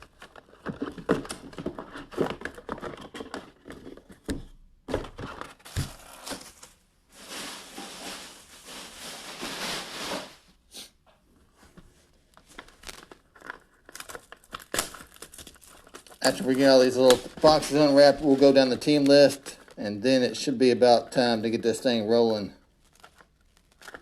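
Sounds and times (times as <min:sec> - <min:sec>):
plastic shrink wrap tearing: 0:05.7 - 0:10.4, 0:12.5 - 0:20.4, 0:22.7 - 0:24.0.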